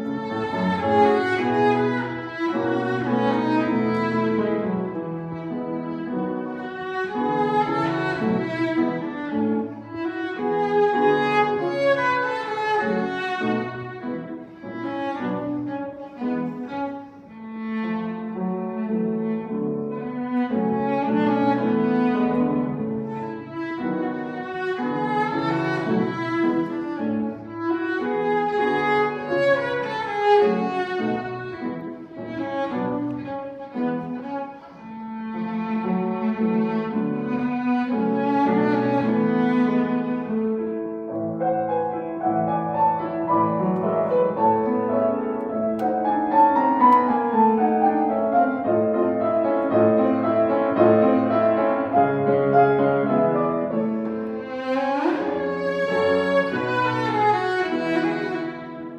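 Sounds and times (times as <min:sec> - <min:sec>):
bowed cellos playing: 0:00.0 - 0:58.9.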